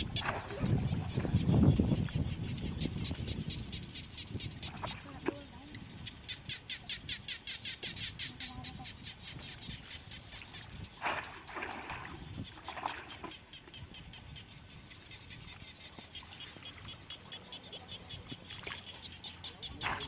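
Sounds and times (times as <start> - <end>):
water splashes: 0.0 - 1.7, 4.6 - 5.7, 10.3 - 13.5, 16.0 - 20.0.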